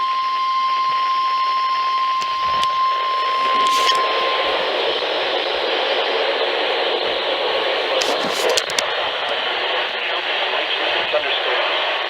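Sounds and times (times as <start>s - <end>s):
radio static hiss: 3.2s - 12.0s.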